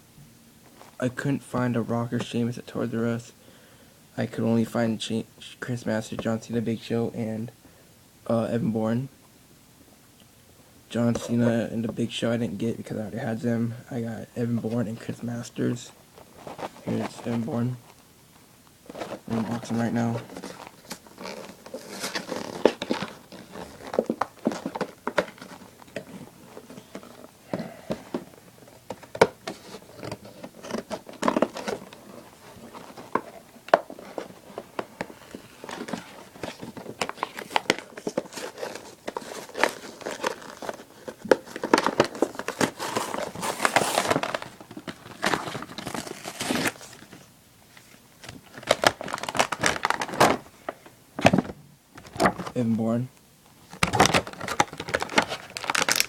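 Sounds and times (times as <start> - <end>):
plastic and cardboard packaging crinkling: 14.9 - 18.0, 18.8 - 52.6, 53.6 - 56.0.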